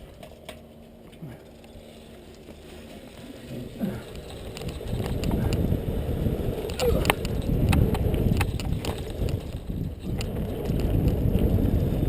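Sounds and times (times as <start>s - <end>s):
bike clicks and knocks: 0.0s - 12.0s
tyre noise on dirt: 0.0s - 12.0s
wind rumble on microphone: 3.6s - 12.0s.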